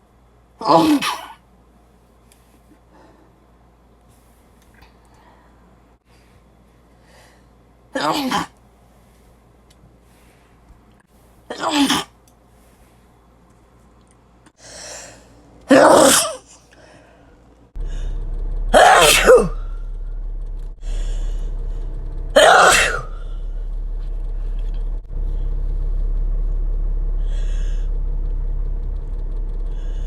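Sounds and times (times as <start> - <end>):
person sneezing: 0.6 - 1.4, 8.0 - 8.5, 11.5 - 12.1, 15.7 - 16.6, 18.8 - 19.6, 22.4 - 23.2
low hum: 17.3 - 30.0.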